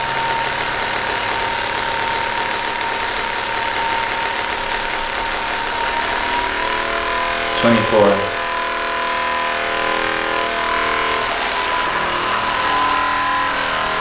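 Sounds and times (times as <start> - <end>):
massager rattling: 0.0 - 7.7
massager motor hum: 0.0 - 14.0.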